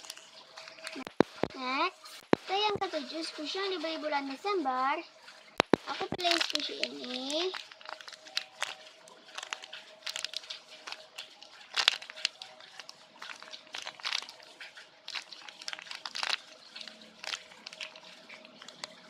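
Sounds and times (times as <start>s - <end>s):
squishy toy crinkling: 0.0s - 1.5s, 5.6s - 19.0s.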